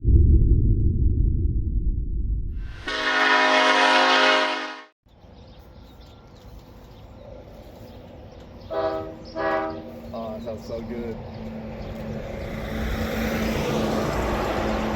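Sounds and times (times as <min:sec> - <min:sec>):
locomotive air horn blast: 0:02.8 - 0:05.0, 0:08.7 - 0:10.0.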